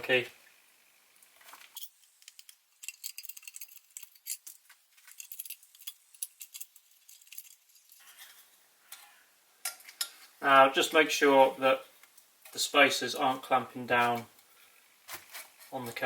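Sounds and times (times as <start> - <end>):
small metal clicks and clinks: 1.5 - 9.0.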